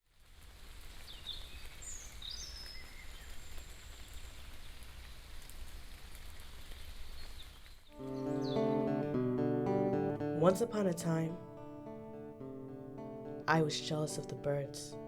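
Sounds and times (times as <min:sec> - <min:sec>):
bird chirps: 0:08.0 - 0:09.2.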